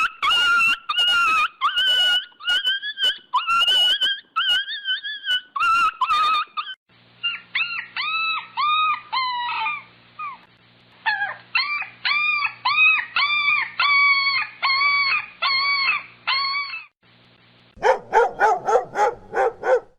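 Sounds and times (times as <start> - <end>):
dog yelping whines: 0.0 - 16.9, 17.8 - 19.9
dog barking: 17.8 - 19.9.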